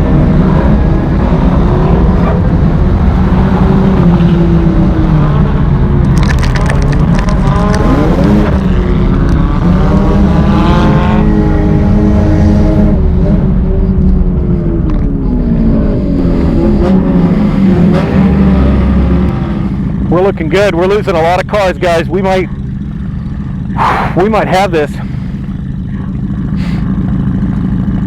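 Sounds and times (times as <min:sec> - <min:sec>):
race car engine accelerating: 0:00.0 - 0:21.7.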